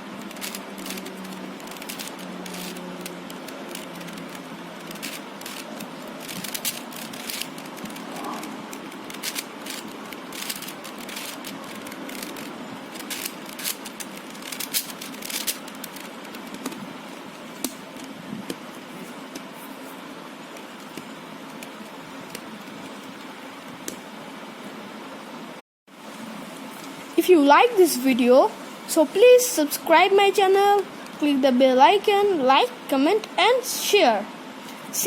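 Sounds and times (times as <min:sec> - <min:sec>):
puzzle cube plastic clicks: 0:00.2 - 0:08.0, 0:08.7 - 0:16.8.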